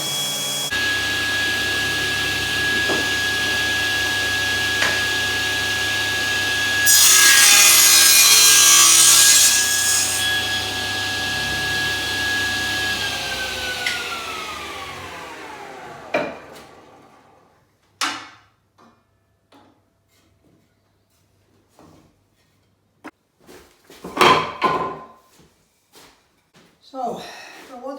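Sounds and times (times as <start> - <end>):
electric saw cutting wood: 0.0 - 17.4.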